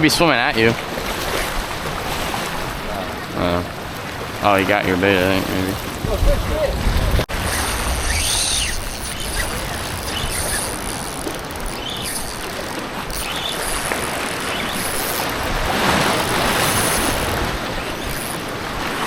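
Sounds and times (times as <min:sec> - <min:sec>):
moving water: 0:00.0 - 0:19.0
wind on microphone: 0:05.2 - 0:19.0.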